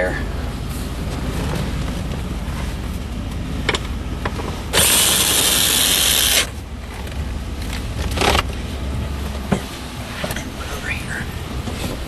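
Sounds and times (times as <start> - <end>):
cordless drill whirring: 4.8 - 6.5.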